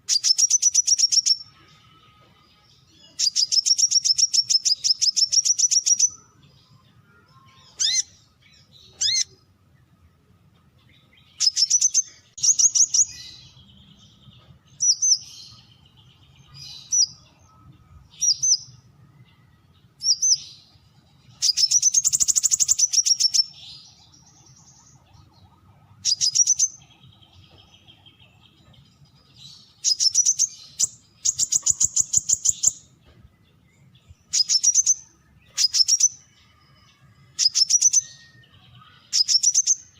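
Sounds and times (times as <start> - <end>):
bird trilling: 7.6 - 8.2, 8.9 - 9.4, 21.4 - 28.3, 29.7 - 32.8, 34.3 - 36.2, 37.4 - 38.1, 39.1 - 39.8.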